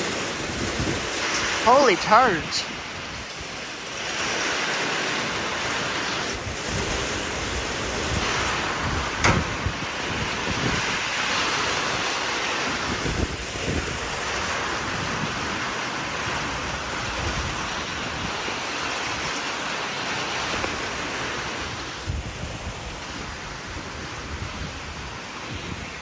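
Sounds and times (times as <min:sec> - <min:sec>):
wind gusting with rain: 0:00.0 - 0:26.0
wind buffeting microphone: 0:21.6 - 0:26.0.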